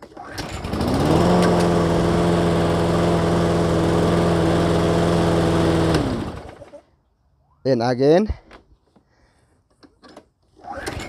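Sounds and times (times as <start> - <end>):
lawn mower engine running: 0.0 - 6.8.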